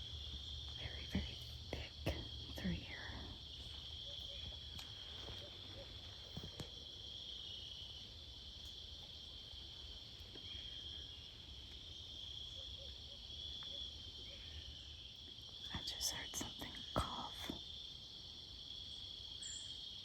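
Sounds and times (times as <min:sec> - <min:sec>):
crickets trilling: 0:00.0 - 0:20.0
faint ticks or rustles: 0:00.3 - 0:07.1.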